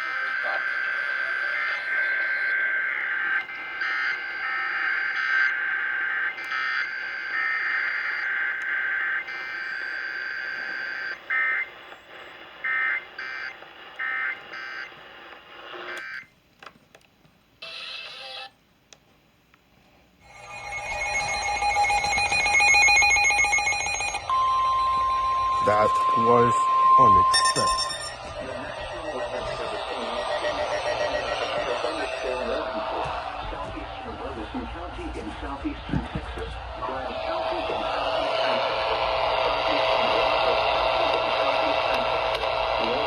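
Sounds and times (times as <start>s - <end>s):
high screeching data tone: 0.0s - 15.0s, 20.2s - 34.9s
short repeated tone bursts: 20.2s - 32.3s
alert attention tone: 20.3s - 32.3s.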